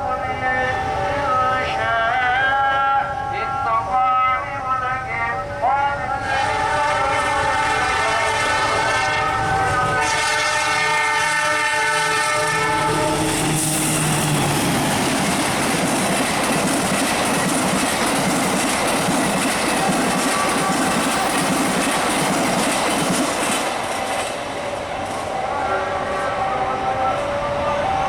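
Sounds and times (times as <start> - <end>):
train horn blast: 6.2 - 15.0, 19.8 - 21.4, 25.0 - 28.0
train wheels clattering on rails: 12.9 - 25.4.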